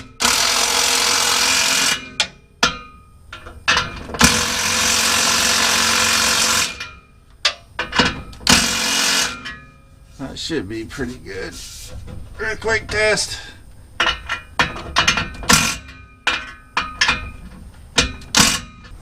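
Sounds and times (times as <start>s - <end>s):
impact wrench running: 0.0s - 2.3s, 4.2s - 6.8s, 8.5s - 9.4s.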